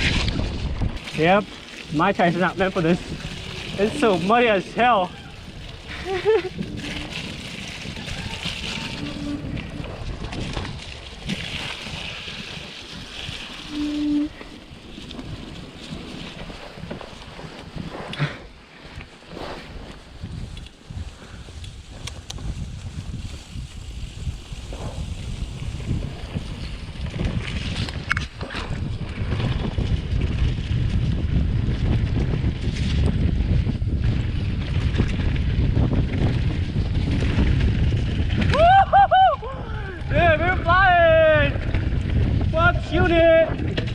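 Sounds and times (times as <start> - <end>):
bike tyres sloshing through mud: 0.0 - 39.8
bike rattling: 0.0 - 43.9
wind buffeting microphone: 0.0 - 43.9
high squeak: 13.7 - 14.5.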